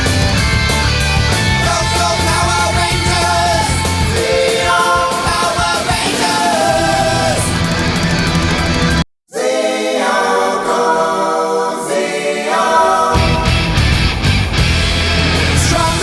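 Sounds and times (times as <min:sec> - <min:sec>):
rock music with singing: 0:00.0 - 0:09.0, 0:12.8 - 0:16.0.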